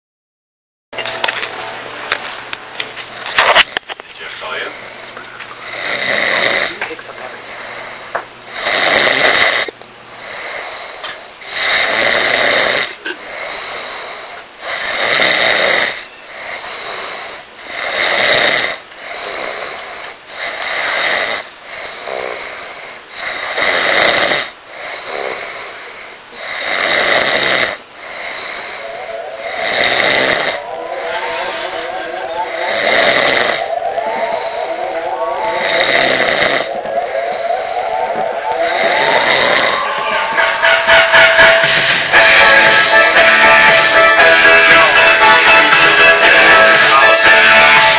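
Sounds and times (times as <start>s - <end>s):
loud rasping snore: 5.6s - 6.8s, 8.5s - 47.9s
wavering whistle-like tone: 30.6s - 42.2s.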